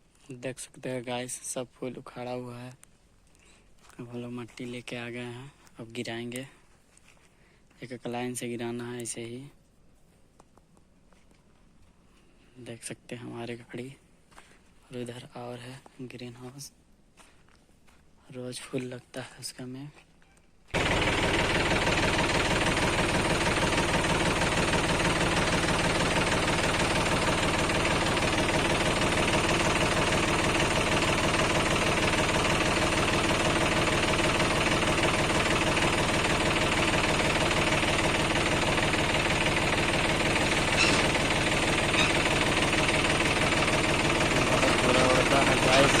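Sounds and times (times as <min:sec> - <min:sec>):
diesel engine running: 0:20.8 - 0:46.0.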